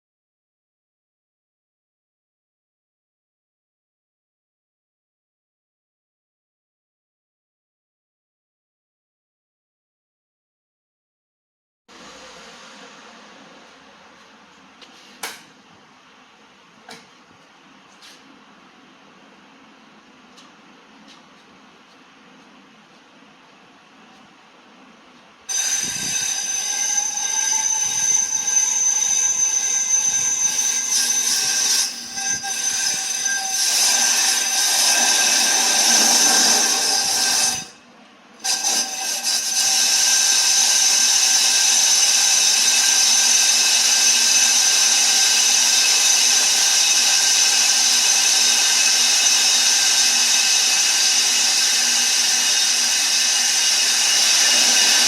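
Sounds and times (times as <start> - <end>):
brake disc machining whine: 25.5 - 37.7, 38.5 - 55.0.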